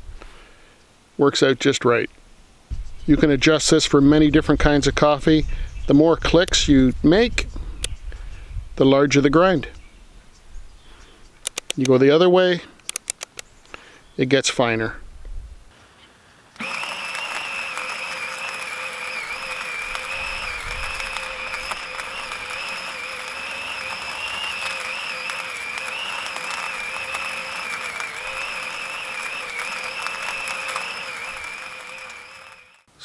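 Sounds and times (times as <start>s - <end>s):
coffee grinder grinding beans: 16.6s - 32.9s.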